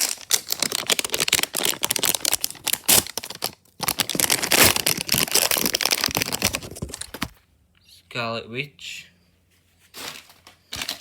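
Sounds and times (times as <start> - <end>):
plastic packets crinkling and tearing: 0.0 - 7.4.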